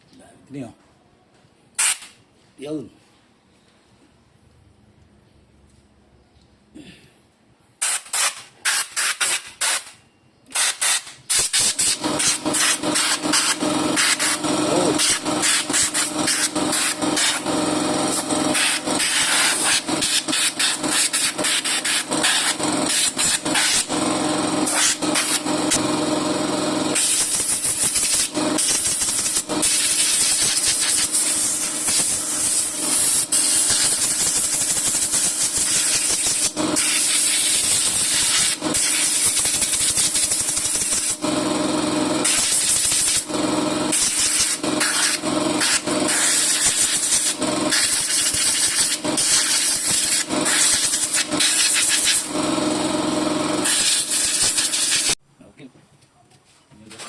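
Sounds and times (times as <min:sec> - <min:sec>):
hissing spray jet on brake: 0:01.8 - 0:02.1, 0:07.8 - 0:09.9, 0:10.6 - 0:17.4, 0:18.5 - 0:23.9, 0:24.7 - 0:25.4, 0:27.0 - 0:41.2, 0:42.2 - 0:43.2, 0:43.9 - 0:52.3, 0:53.6 - 0:55.2.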